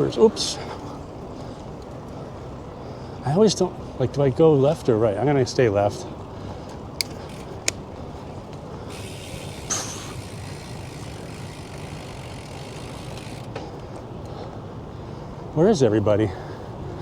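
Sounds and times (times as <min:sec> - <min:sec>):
bicycle rolling noise: 0:00.0 - 0:17.0
road traffic hum: 0:00.0 - 0:17.0
sharp clicks: 0:07.0 - 0:07.9
hiss: 0:09.0 - 0:10.4.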